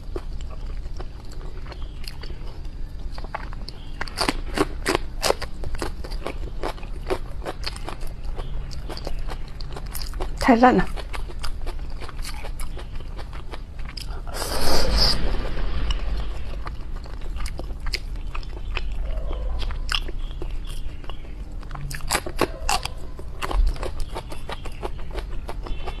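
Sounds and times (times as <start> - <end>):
wet chewing and lip-smacking: 0.0 - 14.4, 16.6 - 26.0
loud noisy burst: 14.3 - 17.4.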